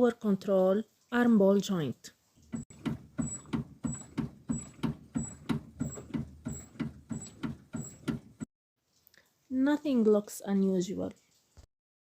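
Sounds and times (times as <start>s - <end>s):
suspension clunking and creaking: 2.4s - 8.5s.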